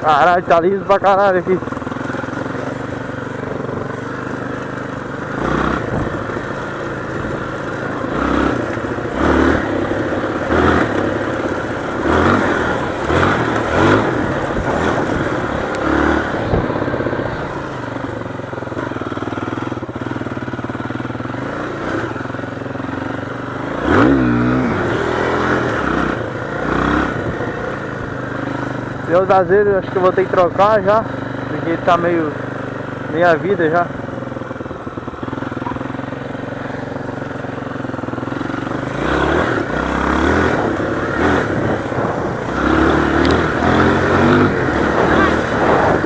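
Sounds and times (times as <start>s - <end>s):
motorcycle engine revving: 0.0s - 46.0s.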